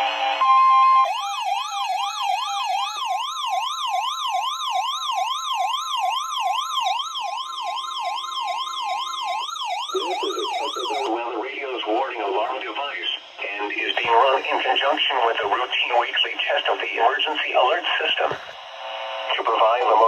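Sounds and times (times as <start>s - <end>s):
steady alarm tone: 0.0s - 20.0s
electronic siren sweeping: 0.1s - 12.2s.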